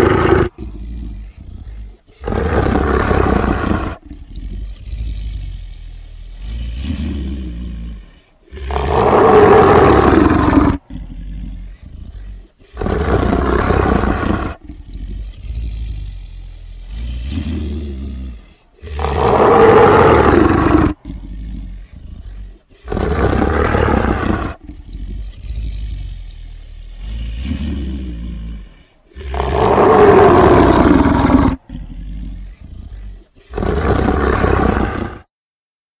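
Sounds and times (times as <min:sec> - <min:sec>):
monster roars: 0:00.0 - 0:01.2, 0:02.2 - 0:04.2, 0:08.5 - 0:11.5, 0:12.8 - 0:15.7, 0:17.0 - 0:22.2, 0:22.8 - 0:25.1, 0:29.1 - 0:35.3
monster growls: 0:00.0 - 0:35.3.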